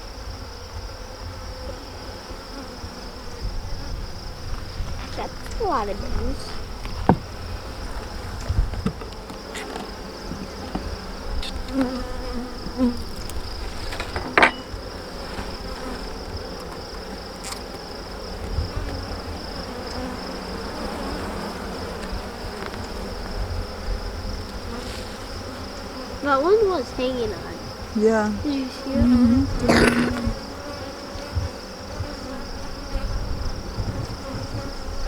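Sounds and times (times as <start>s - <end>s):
bees buzzing: 1.5s - 35.0s.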